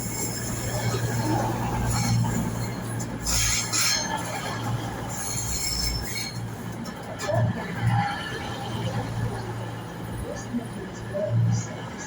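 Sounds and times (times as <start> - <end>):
high-pitched wheel and brake squeal: 0.0 - 6.5
train rumbling slowly: 0.0 - 12.0.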